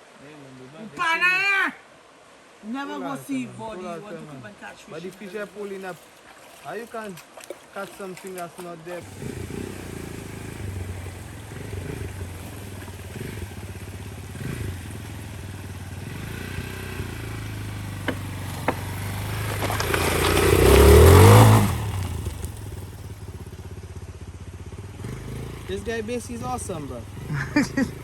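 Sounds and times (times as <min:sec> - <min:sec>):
motorcycle engine revving: 0:09.0 - 0:28.0.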